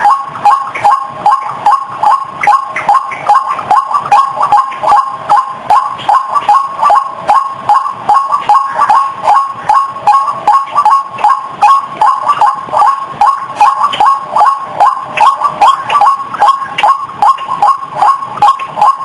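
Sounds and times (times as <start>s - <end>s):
harsh croaking bird calls: 0.0s - 19.0s.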